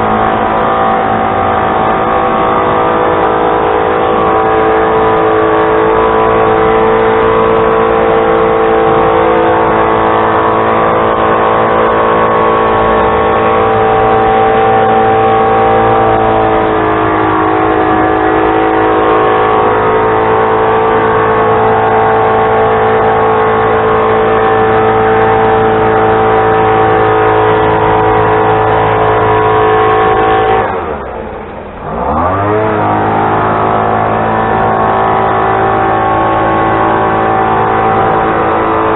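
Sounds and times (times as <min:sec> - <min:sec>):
engine running at high speed: 0:00.0 - 0:38.9.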